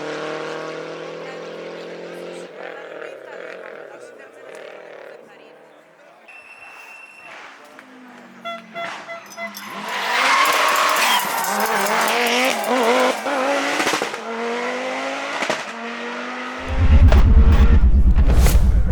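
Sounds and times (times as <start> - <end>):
rally car engine revving: 0.0 - 5.5, 7.4 - 18.9
tyres squealing and skidding: 6.3 - 14.9
low rhythmic throbbing: 16.6 - 18.9.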